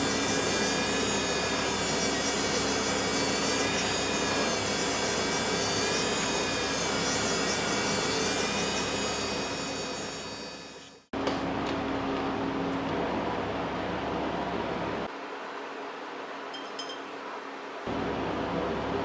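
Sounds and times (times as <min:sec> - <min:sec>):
metal being ground: 0:00.0 - 0:11.0
power tool motor whining: 0:00.0 - 0:11.0.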